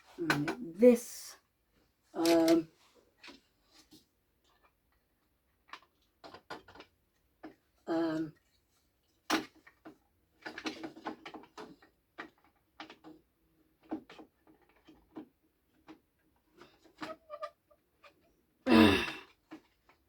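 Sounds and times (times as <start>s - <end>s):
plastic toy pieces clicking: 2.2s - 2.6s.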